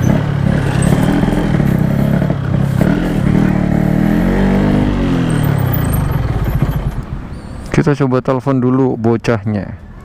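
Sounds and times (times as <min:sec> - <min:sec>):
motorcycle engine revving: 0:00.0 - 0:07.4.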